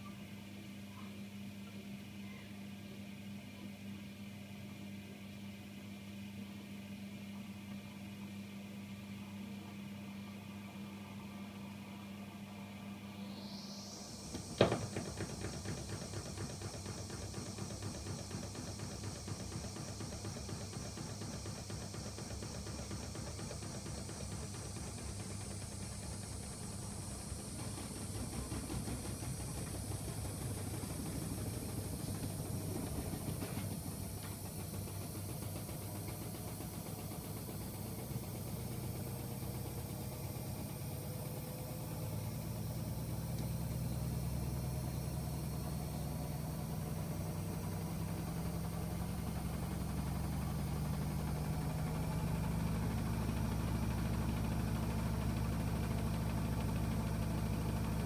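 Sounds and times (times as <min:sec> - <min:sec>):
faint rising whine: 0:11.4 - 0:16.7
washing machine running: 0:11.8 - 0:58.0.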